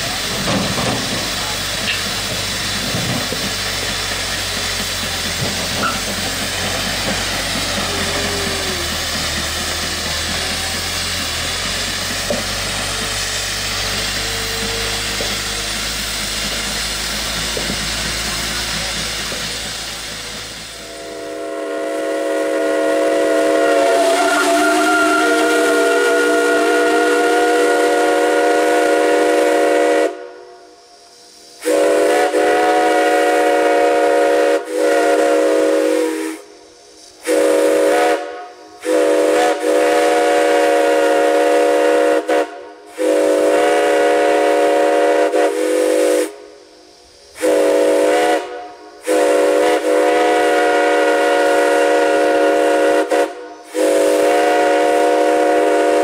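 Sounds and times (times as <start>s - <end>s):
steam whistle blasts: 20.7s - 30.8s, 31.6s - 36.6s, 37.2s - 46.6s, 47.4s - 56.0s.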